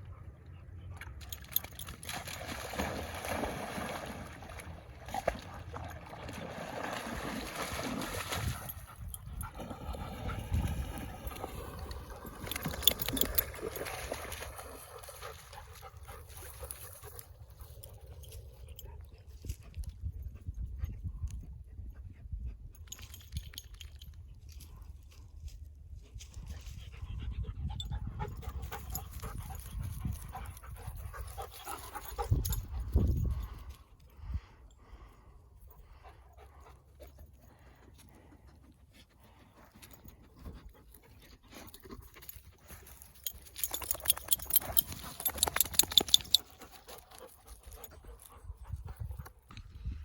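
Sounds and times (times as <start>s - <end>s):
dogs breathing noisily: 8.4s - 19.5s, 26.2s - 50.0s.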